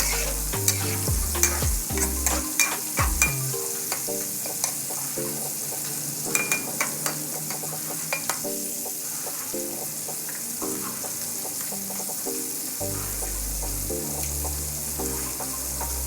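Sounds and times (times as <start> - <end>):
faint background music: 0.0 - 16.0
food sizzling in a pan: 0.0 - 16.0.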